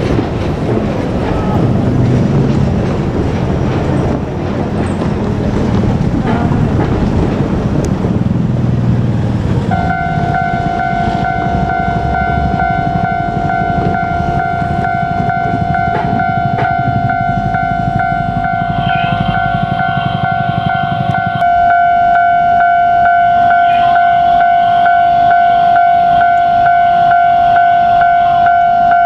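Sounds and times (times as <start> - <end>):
train rail rumble: 0.0 - 29.0
level-crossing warning alarm: 9.7 - 29.0.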